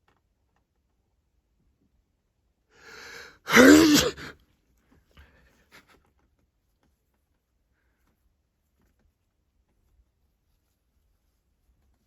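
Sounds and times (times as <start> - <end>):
sharp breath drawn in: 2.8 - 4.3
person sneezing: 2.9 - 4.4.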